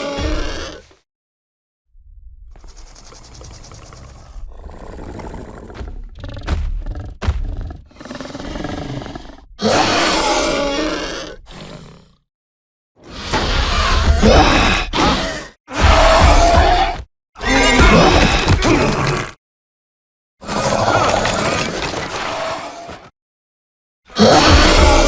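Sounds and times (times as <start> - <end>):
loud creature roar: 0.0 - 1.0, 3.4 - 12.1, 13.3 - 19.4, 20.4 - 23.0, 24.1 - 25.0
low growls: 1.9 - 12.3.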